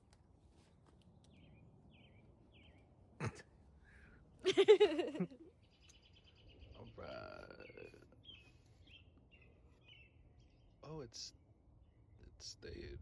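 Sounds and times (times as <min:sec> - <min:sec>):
faint bird chirps: 0:05.5 - 0:13.0.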